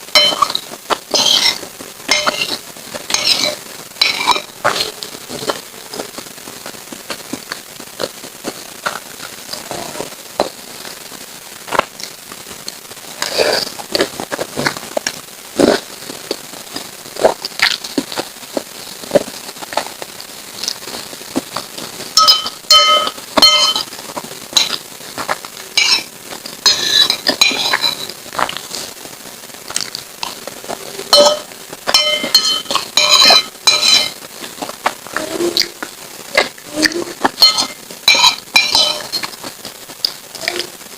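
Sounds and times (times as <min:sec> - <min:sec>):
metal spoon clinking against bowl: 0:00.2 - 0:04.5, 0:22.2 - 0:23.9, 0:31.1 - 0:34.2, 0:37.4 - 0:39.3
wet eating sounds: 0:00.2 - 0:11.0, 0:11.7 - 0:29.0, 0:29.6 - 0:40.8.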